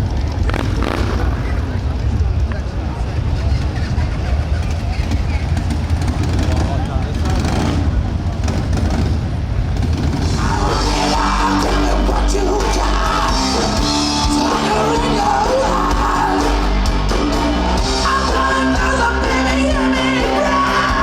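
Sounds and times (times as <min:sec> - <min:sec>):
low rumble: 0:00.0 - 0:21.0
rock music with singer: 0:10.1 - 0:21.0.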